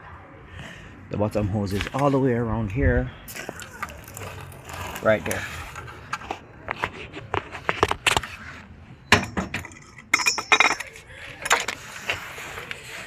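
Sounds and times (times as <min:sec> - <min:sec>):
hand tools and metal parts clinking: 0:09.1 - 0:12.2.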